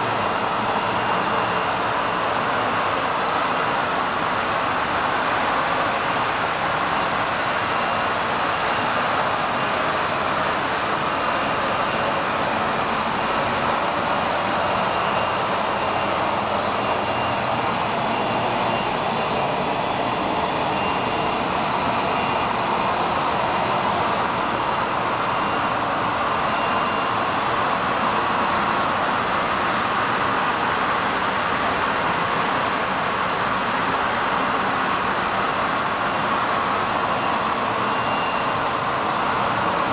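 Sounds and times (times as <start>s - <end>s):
faint high whine: 0.0s - 39.9s.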